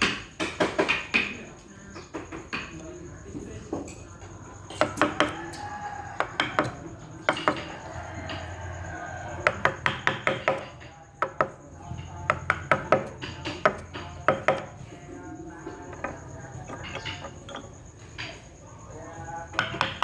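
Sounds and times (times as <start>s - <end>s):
mallet tapping chisel into wood: 4.7s - 8.6s, 9.2s - 14.9s, 15.6s - 17.8s, 19.5s - 20.0s.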